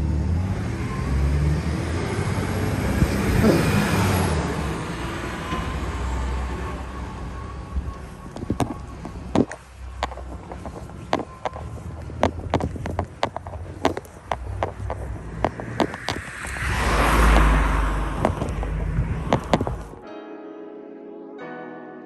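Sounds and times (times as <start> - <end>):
road vehicle passing: 0.0 - 20.0
sharp taps and clicks: 7.9 - 20.0.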